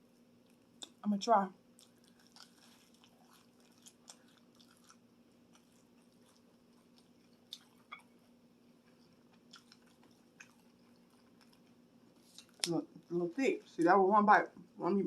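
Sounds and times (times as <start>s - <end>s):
low room hum: 0.0s - 15.0s
wet mouth clicks of chewing: 1.8s - 8.0s, 9.3s - 12.8s.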